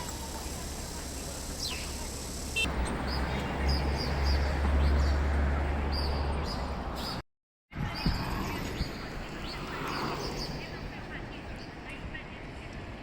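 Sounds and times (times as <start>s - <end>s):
street noise rumble: 0.0s - 13.0s
small bird chirping: 1.2s - 5.2s.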